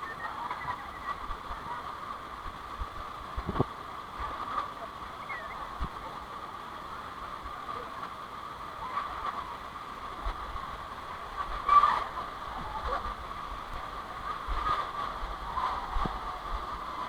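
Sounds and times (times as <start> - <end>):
flowing water: 0.0 - 17.0
wind on microphone: 2.4 - 4.6, 10.1 - 17.0.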